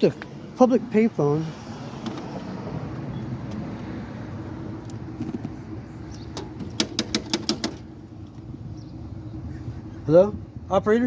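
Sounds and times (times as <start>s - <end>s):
low hum of traffic: 0.0s - 11.0s
payphone clicks: 6.3s - 7.8s.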